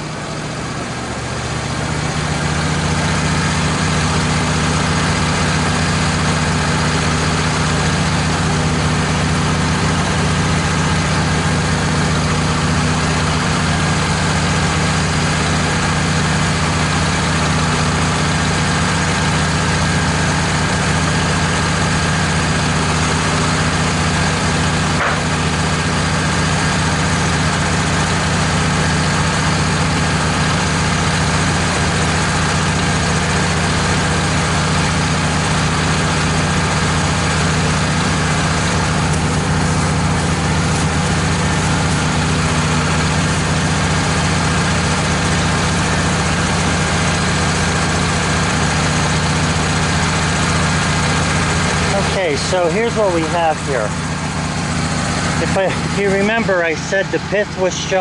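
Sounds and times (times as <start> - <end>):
band sawmill sawing a board: 23.2 - 34.9, 35.5 - 58.0.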